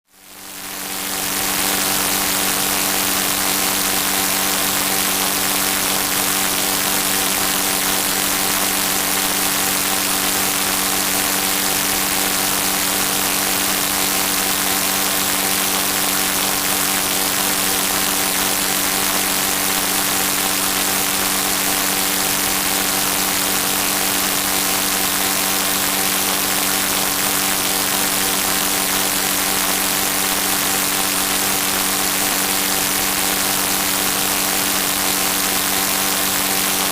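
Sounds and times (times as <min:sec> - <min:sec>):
mechanical drone with hiss and hum: 0:00.3 - 0:36.9.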